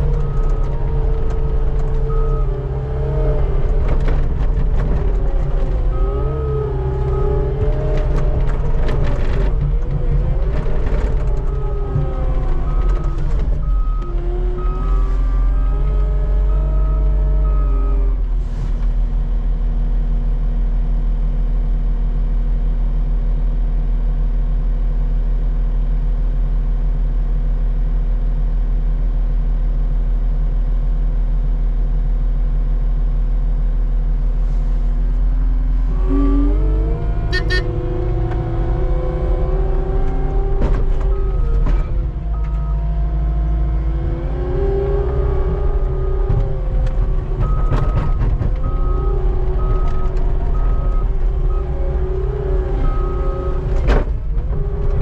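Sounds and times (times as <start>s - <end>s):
skid steer engine running: 0.0s - 55.0s
reversing alarm beeping: 12.6s - 18.0s, 37.3s - 37.8s, 47.4s - 53.7s.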